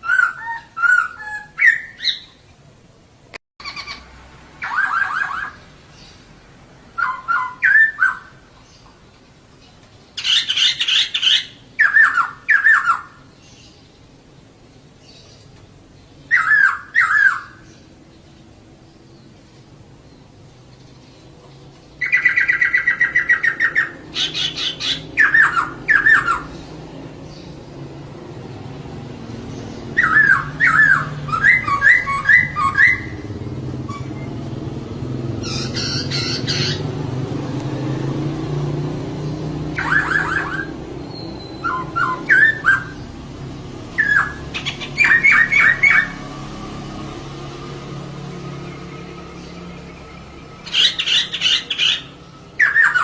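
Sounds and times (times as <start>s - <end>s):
bird chirping in quick bursts: 29.4s - 34.5s, 39.7s - 43.2s.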